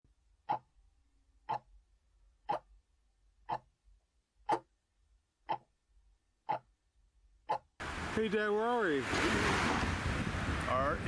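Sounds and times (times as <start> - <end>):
clock ticking: 0.4 - 0.8, 1.4 - 1.8, 2.4 - 2.8, 3.4 - 3.7, 5.4 - 5.8, 6.4 - 6.7.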